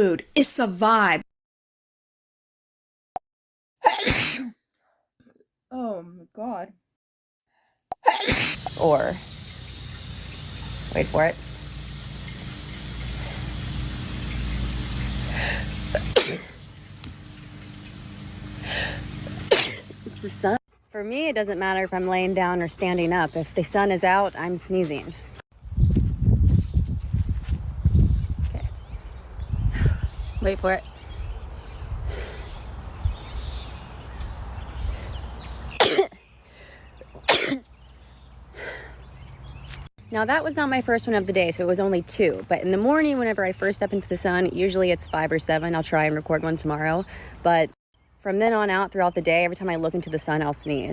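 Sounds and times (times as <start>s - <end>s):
woman sneezing: 3.8s - 4.6s, 8.0s - 8.6s.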